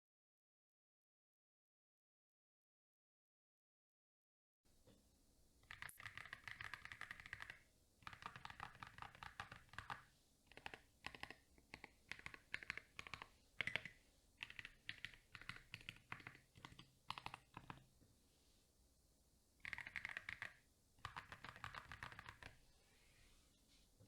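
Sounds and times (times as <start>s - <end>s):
mechanical keyboard typing: 5.6s - 17.8s, 19.6s - 22.6s.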